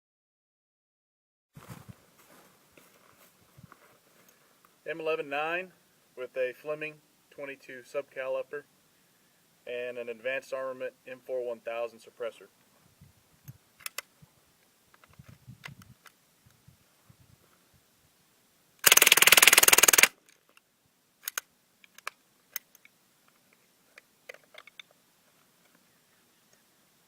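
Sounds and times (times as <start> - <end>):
suppressed gunfire burst: 18.8 - 20.1.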